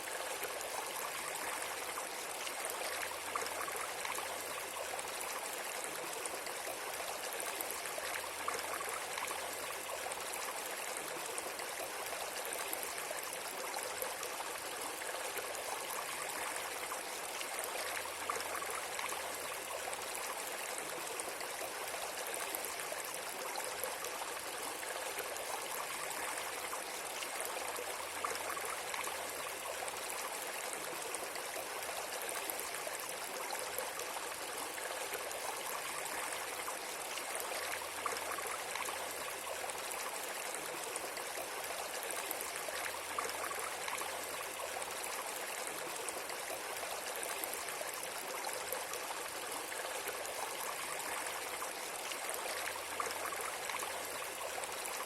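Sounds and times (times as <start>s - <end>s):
water flowing steadily: 0.0s - 55.0s.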